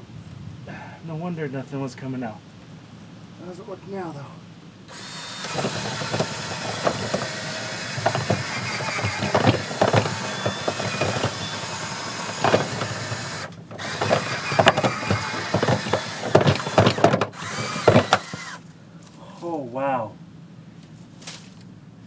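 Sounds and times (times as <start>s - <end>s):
mechanical hum: 4.8s - 19.4s
scraping and knocking in duct: 4.9s - 18.6s.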